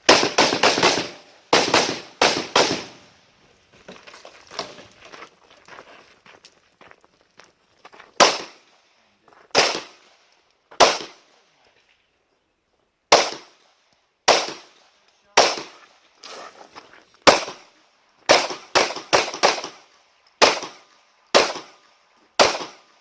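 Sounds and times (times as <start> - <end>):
rifle shots echoing: 0.0 - 3.2, 8.2 - 8.8, 9.5 - 10.2, 10.8 - 11.4, 13.1 - 16.0, 17.2 - 23.0.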